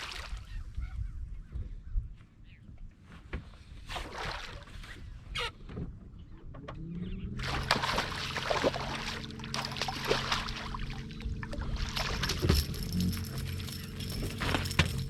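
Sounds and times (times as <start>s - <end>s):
boat motor humming: 6.2s - 15.0s
water rushing and splashing: 7.4s - 14.8s.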